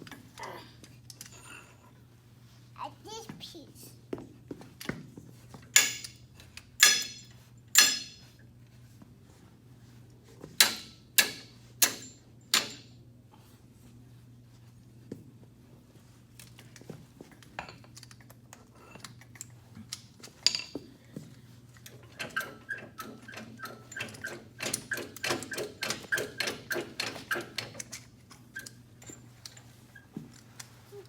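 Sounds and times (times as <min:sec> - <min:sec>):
metal clinks and knocks: 0:05.6 - 0:08.3, 0:16.6 - 0:20.9
ringing metal-on-metal taps: 0:06.8 - 0:08.2.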